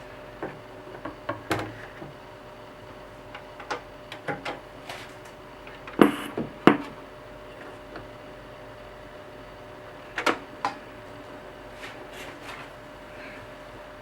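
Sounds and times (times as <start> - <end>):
turntable handling clicks and knocks: 3.3 - 7.0, 10.2 - 10.8.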